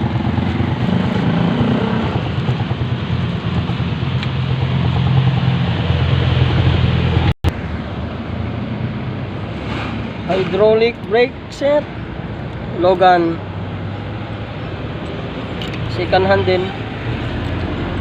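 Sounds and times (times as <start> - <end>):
vehicle engine running: 0.0 - 9.6.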